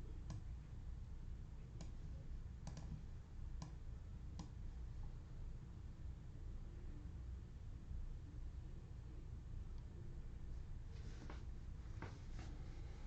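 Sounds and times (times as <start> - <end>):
faint low hum: 0.0 - 13.0
light sharp clicks: 2.6 - 2.9.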